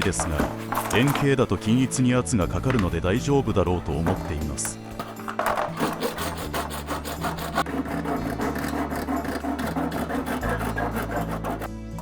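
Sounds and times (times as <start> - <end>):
tool rasping through plastic pot: 0.0 - 11.8.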